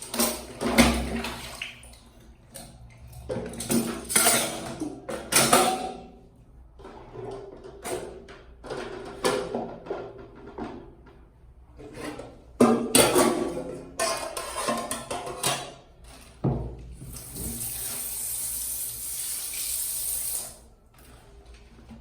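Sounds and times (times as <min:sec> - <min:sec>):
tap running into sink: 0:16.4 - 0:20.5.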